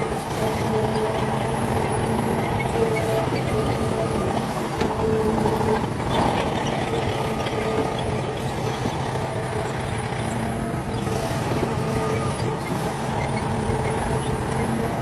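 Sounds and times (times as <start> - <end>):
heavy diesel machinery engine drone: 0.0 - 15.0.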